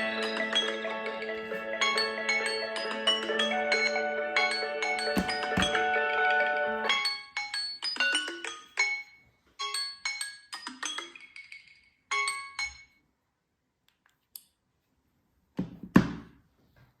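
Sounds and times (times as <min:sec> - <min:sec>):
chiming phone alarm melody: 0:00.0 - 0:13.0
thumps: 0:05.1 - 0:05.8.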